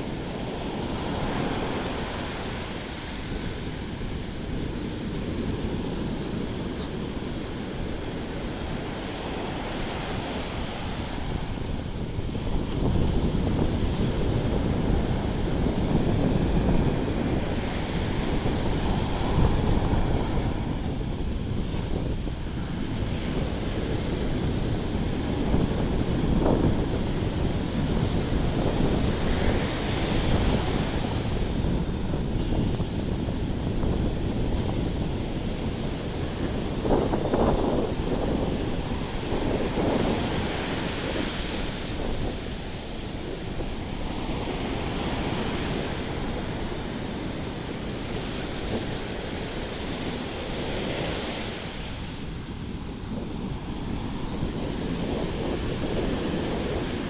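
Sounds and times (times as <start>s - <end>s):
sea waves washing on shore: 0.0s - 57.0s
wind rumbling on microphone: 0.0s - 57.0s.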